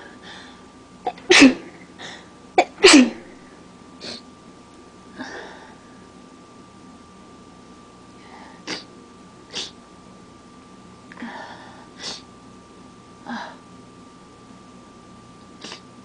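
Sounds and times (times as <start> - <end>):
person sneezing: 1.1 - 1.8, 2.6 - 3.3, 8.6 - 8.9, 9.5 - 9.8, 12.0 - 12.3, 15.6 - 15.9.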